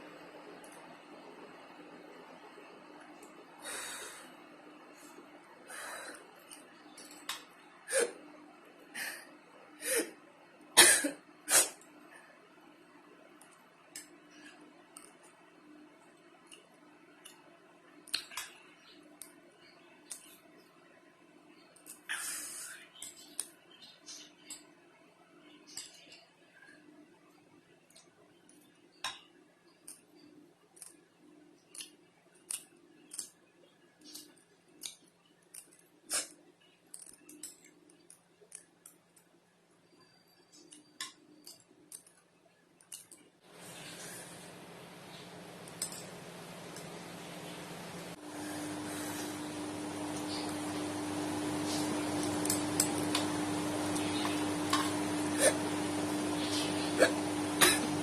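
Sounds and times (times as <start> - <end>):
steady low hum: 43.5 - 58.0.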